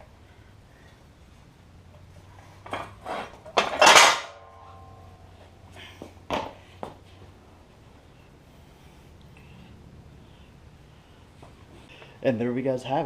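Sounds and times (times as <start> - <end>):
metal parts clattering: 2.7 - 4.5.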